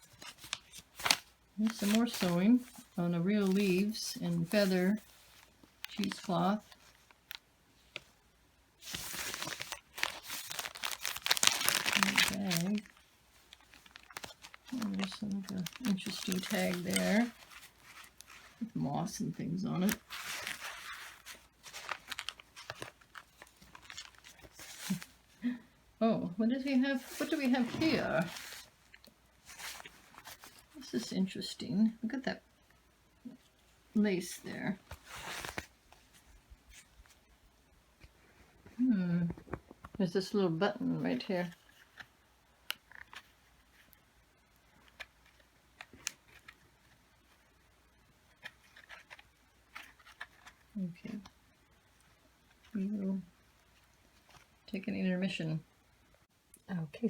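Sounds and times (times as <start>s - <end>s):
paper and card rustling: 0.0s - 8.1s, 8.8s - 25.4s, 26.6s - 31.4s, 34.2s - 37.2s, 41.0s - 44.0s, 44.6s - 47.5s, 48.2s - 51.4s
paper pages handling clicks: 0.1s - 2.3s.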